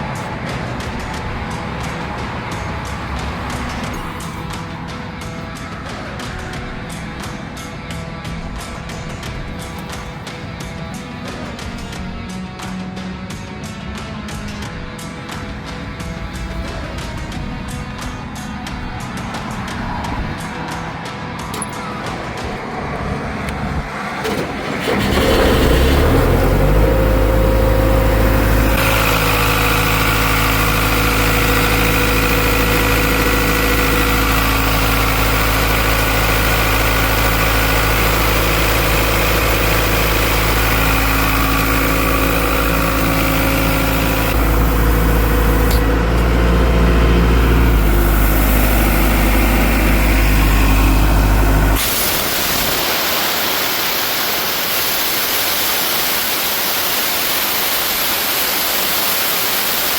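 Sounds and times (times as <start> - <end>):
steady rushing hiss: 0.0 - 24.2, 26.0 - 59.9
diesel engine running: 0.0 - 59.9.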